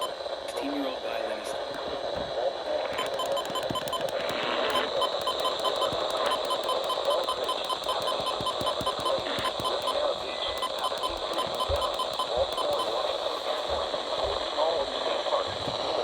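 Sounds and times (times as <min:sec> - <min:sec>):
radio static: 0:00.0 - 0:16.0
rapid electronic beeping: 0:02.9 - 0:13.2.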